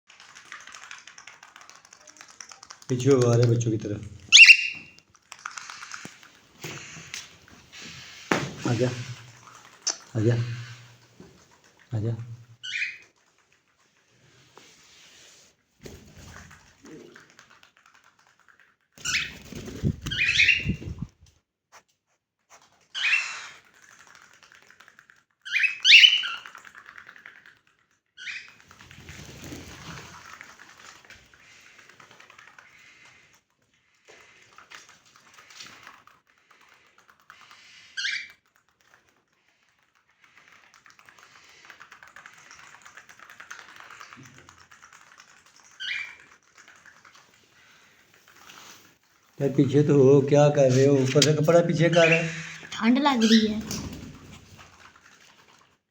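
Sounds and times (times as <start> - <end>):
cockatiels chirping: 4.3 - 4.9, 12.6 - 13.0, 19.1 - 19.4, 20.1 - 21.0, 25.5 - 26.5, 51.8 - 53.9.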